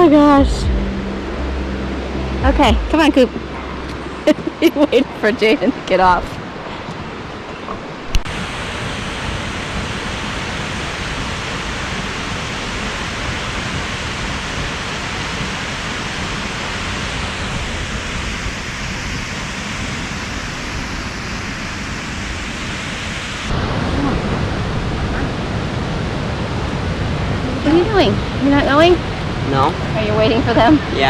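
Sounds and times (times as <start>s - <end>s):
waterfall rushing: 8.0s - 31.0s.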